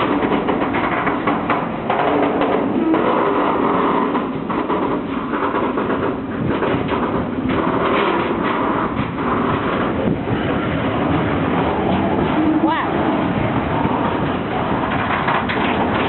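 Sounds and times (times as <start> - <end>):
train wheels clattering over rail joints: 0.0 - 16.0.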